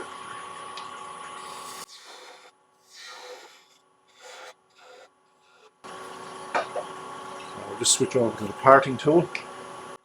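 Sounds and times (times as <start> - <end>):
gouge scraping spinning wood: 1.4 - 6.4.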